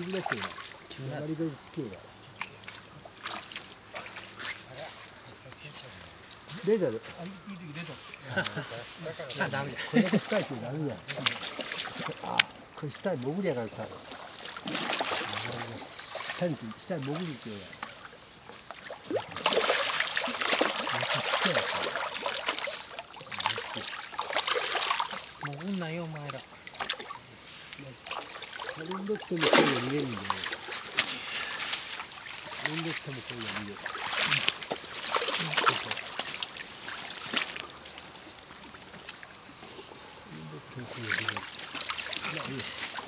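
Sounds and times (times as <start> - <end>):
fish splashing in water: 0.0 - 0.9, 2.1 - 5.2, 9.5 - 43.0.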